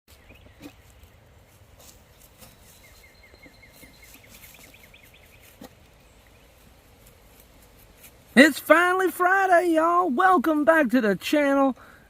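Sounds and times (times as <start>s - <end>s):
songbird trilling: 2.6s - 6.6s.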